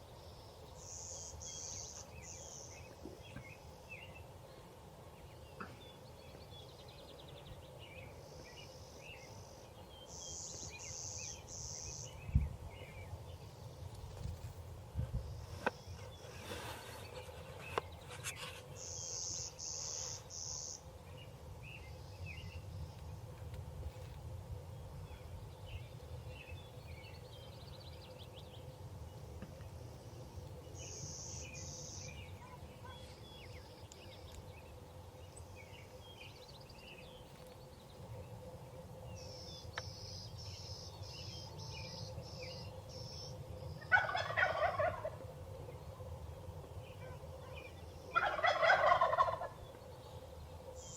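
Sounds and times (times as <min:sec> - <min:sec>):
turkeys gobbling: 0:43.9 - 0:45.2, 0:48.2 - 0:49.6.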